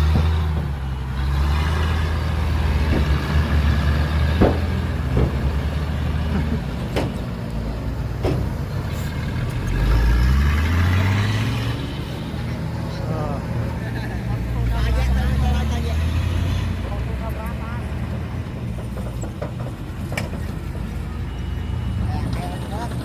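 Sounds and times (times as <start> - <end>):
diesel machinery engine running: 0.0 - 23.0
sharp knocks: 4.3 - 5.7, 6.9 - 7.3.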